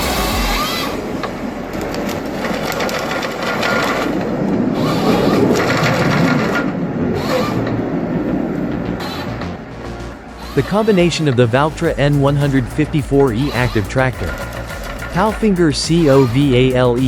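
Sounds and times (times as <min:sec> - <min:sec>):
rattling forestry machinery: 0:00.0 - 0:07.8, 0:09.8 - 0:17.0.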